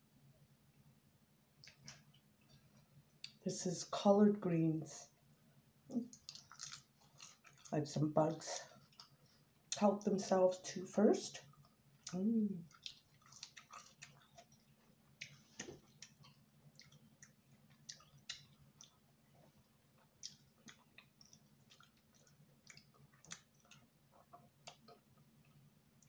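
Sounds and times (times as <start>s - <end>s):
faint low hum: 0.0s - 26.0s
person chewing: 5.9s - 7.8s, 8.5s - 9.8s, 11.4s - 25.7s.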